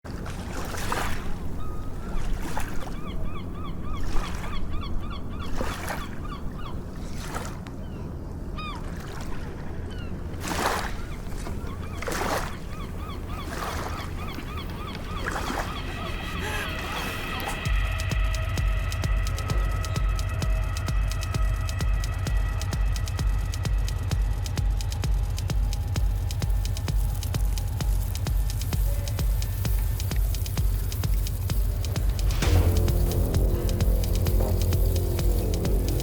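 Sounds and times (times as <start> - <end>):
gulls calling: 0.1 - 36.0
steady low rumble: 14.0 - 36.0.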